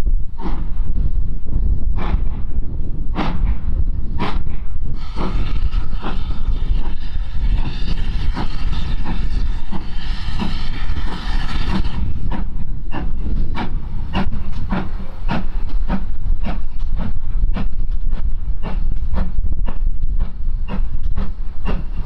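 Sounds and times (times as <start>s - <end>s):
train rumbling with rhythmic beat: 0.0s - 22.0s
hiss: 5.0s - 17.1s.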